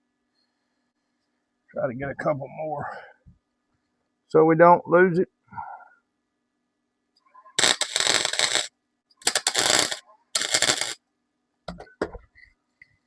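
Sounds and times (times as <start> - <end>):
welder crackling: 7.6 - 11.0.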